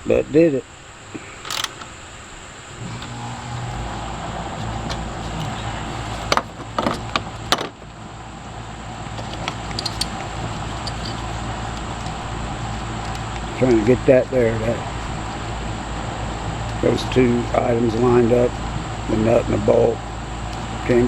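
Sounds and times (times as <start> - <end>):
low engine hum: 0.7 - 21.0.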